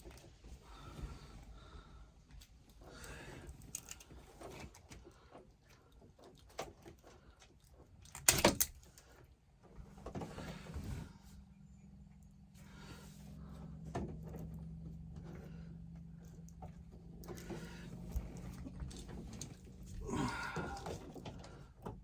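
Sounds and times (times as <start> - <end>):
light clicks and rustles: 2.2 - 11.4, 12.1 - 22.0
low steady hum: 7.1 - 22.0.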